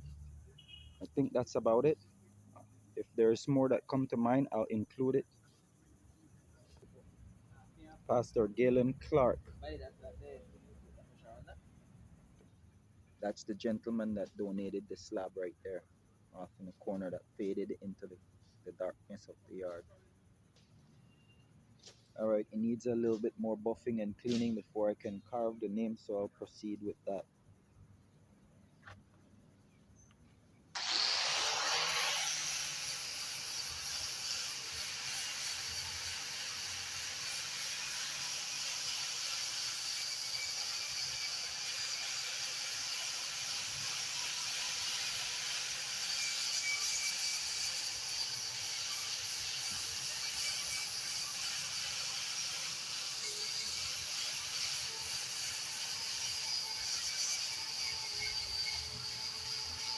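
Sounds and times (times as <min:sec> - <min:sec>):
wire brush grinder scouring wood: 0:30.8 - 0:59.9.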